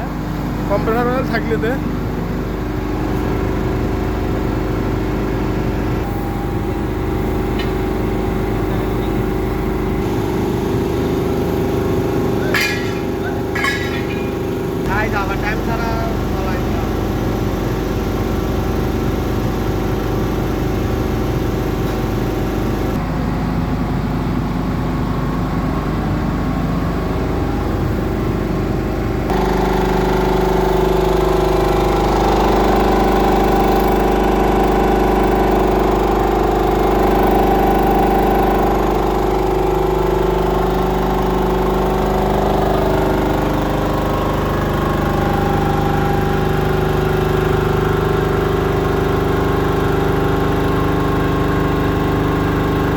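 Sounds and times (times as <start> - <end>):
air compressor running: 0.0 - 52.9
wavering hum: 6.5 - 16.4.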